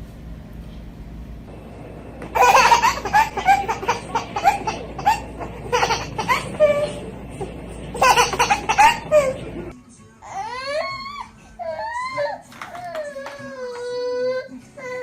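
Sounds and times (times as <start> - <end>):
baby laughing: 2.4 - 9.7.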